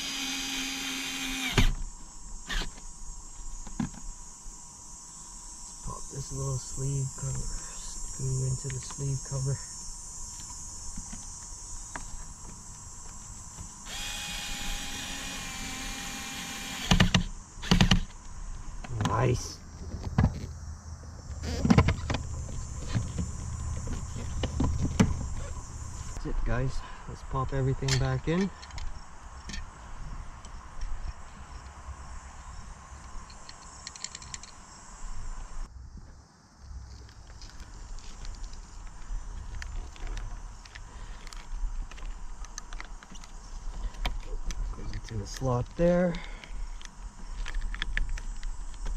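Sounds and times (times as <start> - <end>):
power drill driving screw: 0.0 - 1.8, 2.4 - 2.8, 13.9 - 18.1
crickets chirping: 0.0 - 48.9
small parts clicking and rattling: 33.0 - 34.6, 37.3 - 48.9.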